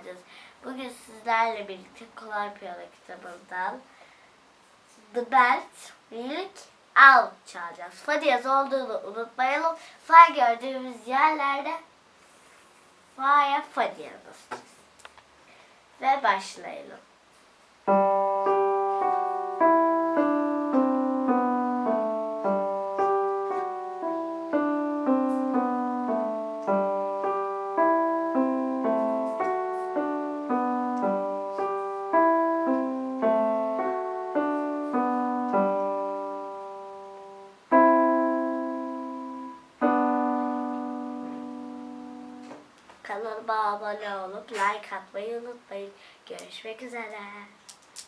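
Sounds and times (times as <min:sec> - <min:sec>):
simple piano piece: 0:17.8 - 0:42.8.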